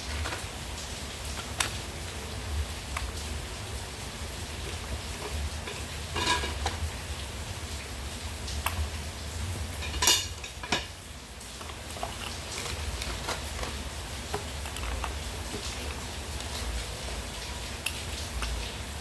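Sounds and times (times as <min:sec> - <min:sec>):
hard objects clattering: 0:00.0 - 0:02.2, 0:04.3 - 0:07.1, 0:09.7 - 0:18.7.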